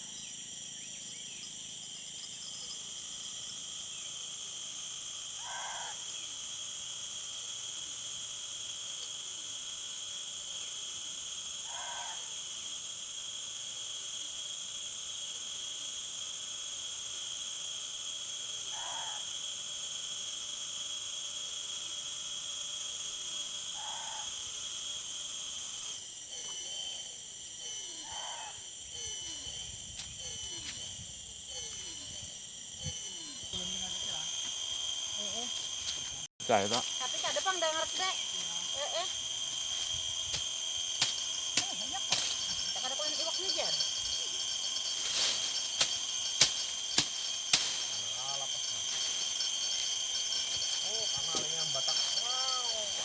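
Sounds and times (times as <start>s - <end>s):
night insects droning: 0.0s - 53.0s
animal call: 5.4s - 6.1s, 11.7s - 12.3s, 18.7s - 19.3s, 23.8s - 24.4s, 28.0s - 28.6s.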